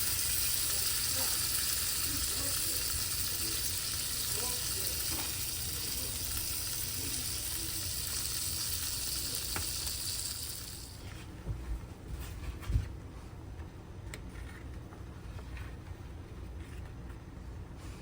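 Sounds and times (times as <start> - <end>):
filling sizzling in a pan: 0.0 - 11.1.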